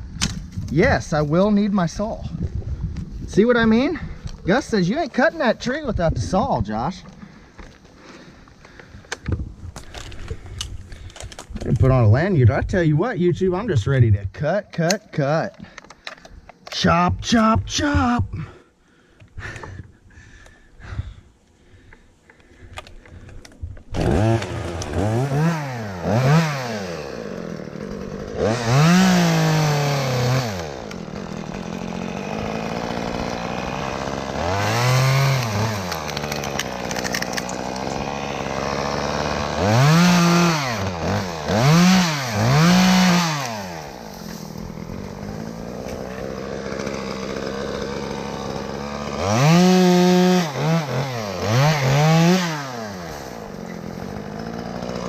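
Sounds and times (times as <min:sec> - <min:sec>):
chainsaw revving and idling: 0:23.9 - 0:55.0.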